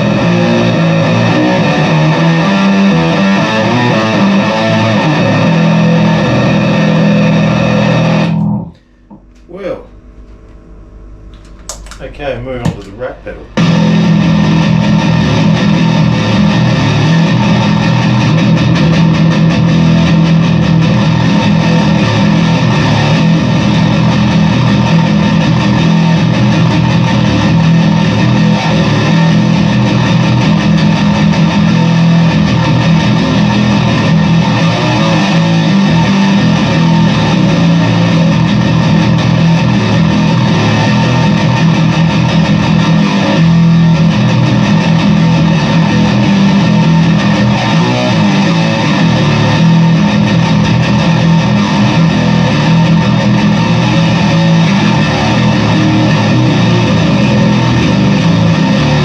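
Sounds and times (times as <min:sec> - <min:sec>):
heavily distorted bass guitar: 0:00.0 - 0:10.3, 0:11.1 - 0:59.0.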